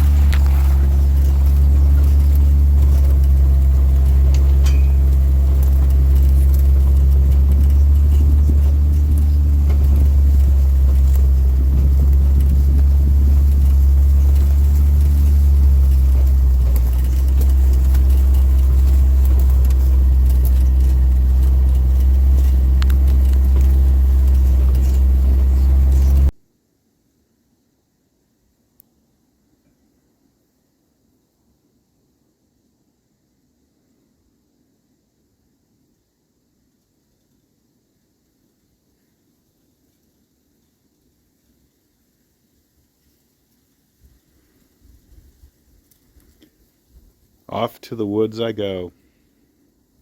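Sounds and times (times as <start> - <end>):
vehicle engine rumbling: 0.0 - 26.4.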